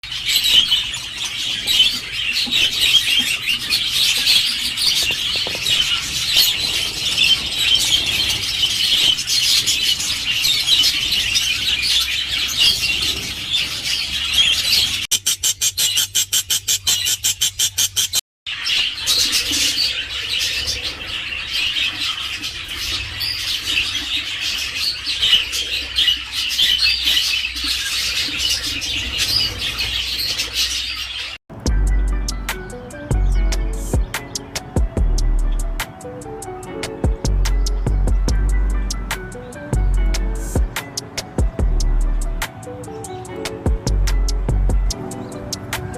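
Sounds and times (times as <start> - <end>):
budgerigars chattering: 0.0 - 31.4, 32.3 - 45.9
rapid even ticking: 36.8 - 45.9.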